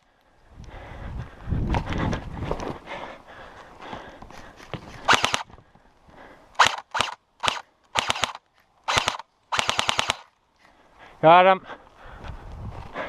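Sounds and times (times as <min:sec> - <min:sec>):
airsoft guns firing bursts: 0:05.1 - 0:05.5, 0:06.6 - 0:10.3.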